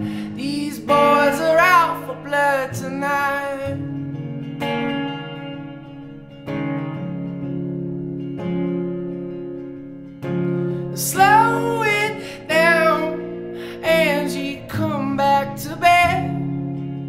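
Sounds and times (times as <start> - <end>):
person singing: 0.0 - 4.0, 10.8 - 16.8
strummed acoustic guitar chords: 0.0 - 17.0.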